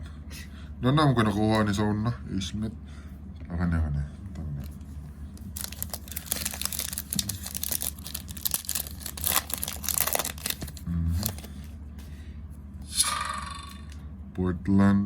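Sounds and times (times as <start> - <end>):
plastic wrapping crinkling: 5.4 - 11.6.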